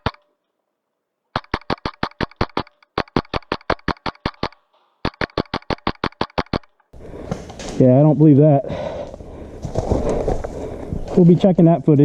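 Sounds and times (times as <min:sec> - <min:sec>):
airsoft rifle firing: 0:01.4 - 0:06.8.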